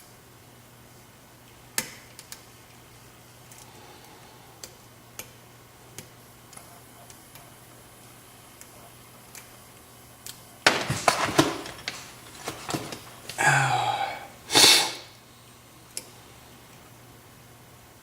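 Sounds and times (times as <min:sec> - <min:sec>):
person sneezing: 0:13.3 - 0:15.2.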